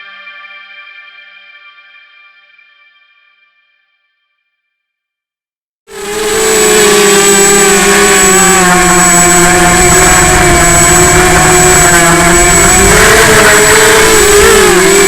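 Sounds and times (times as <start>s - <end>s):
quadcopter motors whining: 5.9s - 15.0s.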